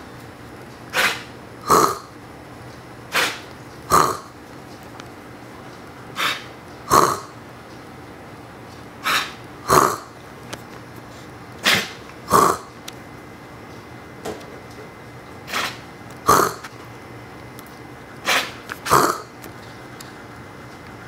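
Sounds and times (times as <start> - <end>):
dog coughing: 0.9 - 2.2, 3.1 - 4.4, 6.2 - 7.4, 9.0 - 10.2, 11.6 - 12.8, 15.4 - 16.7, 18.2 - 19.4.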